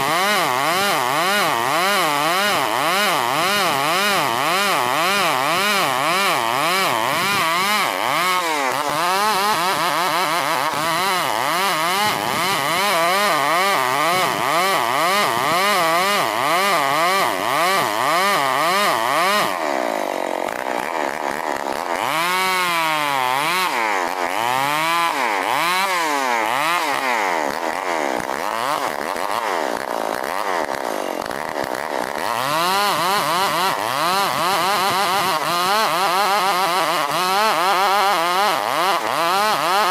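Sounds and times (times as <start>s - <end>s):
chainsaw cutting through log: 0.0s - 39.9s.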